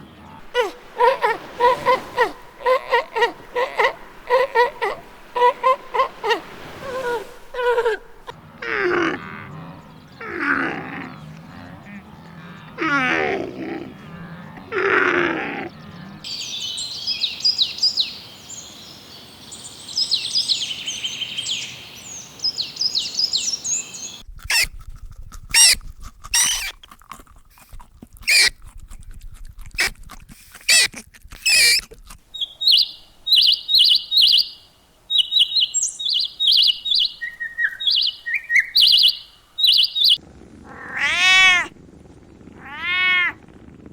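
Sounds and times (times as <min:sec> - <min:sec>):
birds chirping and tweeting: 0:00.0 - 0:08.6, 0:09.2 - 0:12.8, 0:15.4 - 0:24.7, 0:30.7 - 0:40.2
long wavering animal calls: 0:00.0 - 0:16.3, 0:26.4 - 0:26.7, 0:28.3 - 0:28.5, 0:30.7 - 0:41.8
sharp short animal calls: 0:00.4 - 0:08.3, 0:24.5 - 0:24.7, 0:25.5 - 0:26.8, 0:28.2 - 0:28.6, 0:29.8 - 0:34.5
rapid high peeping: 0:31.5 - 0:40.2.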